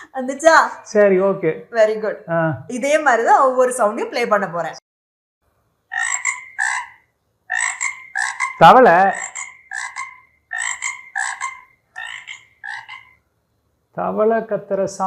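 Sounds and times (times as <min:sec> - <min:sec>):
frog croaking: 0:05.9 - 0:13.4.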